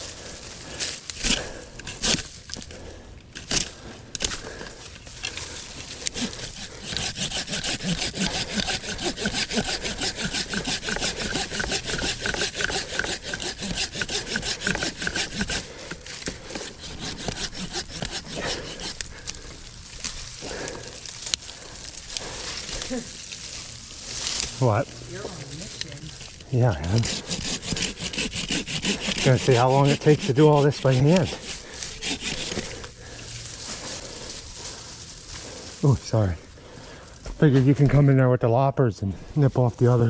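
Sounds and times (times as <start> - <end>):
wood cracking: 0.6 - 29.3
hand saw cutting woody stems: 0.7 - 36.0.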